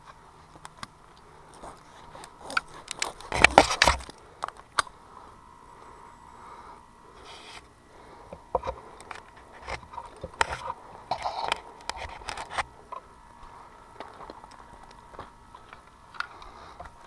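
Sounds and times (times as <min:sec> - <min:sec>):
faint steady hum: 0:00.0 - 0:17.0
irregular scraping: 0:08.3 - 0:12.7.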